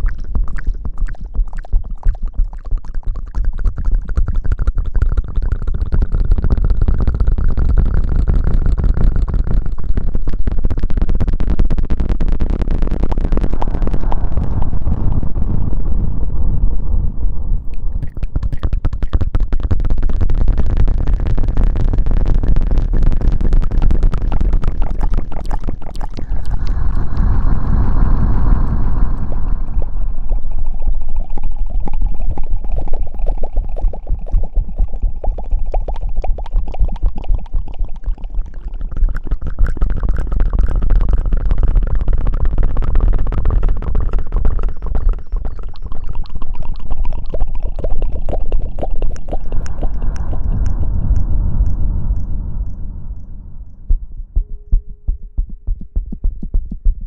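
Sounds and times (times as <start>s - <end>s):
heavy low rumble: 12.6s - 18.7s, 20.7s - 35.2s, 47.1s - 56.0s.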